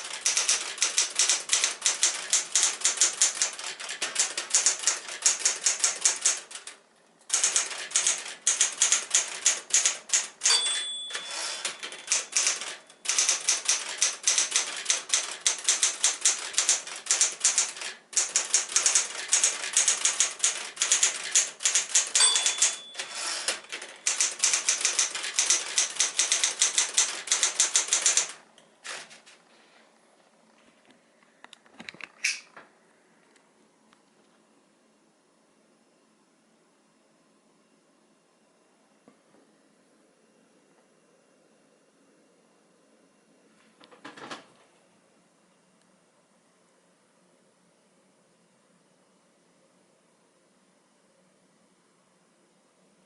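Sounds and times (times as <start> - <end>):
typewriter margin bell: 0.0 - 28.4
typewriter key strikes: 0.0 - 29.0.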